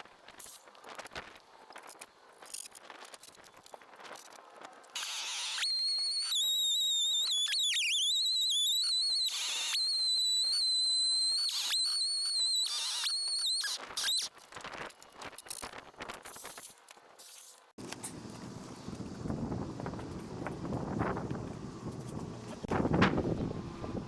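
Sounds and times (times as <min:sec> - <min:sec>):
chainsaw cutting log: 0:05.0 - 0:14.3.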